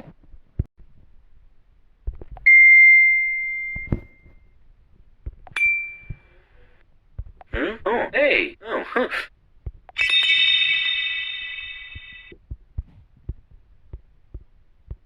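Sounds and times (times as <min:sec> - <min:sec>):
bell-like dings: 0:02.5 - 0:04.4, 0:05.6 - 0:06.4, 0:10.0 - 0:12.3.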